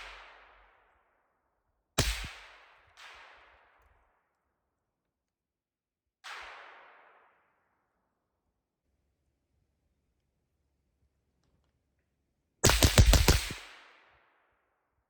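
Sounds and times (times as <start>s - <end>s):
suppressed gunshot cracks: 2.0s - 2.3s, 12.6s - 13.6s
bullet impact thud: 12.6s - 13.6s.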